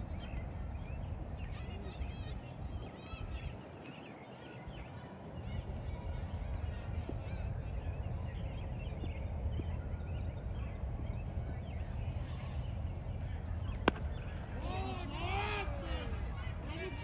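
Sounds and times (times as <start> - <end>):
steady low rumble: 5.6 - 15.1.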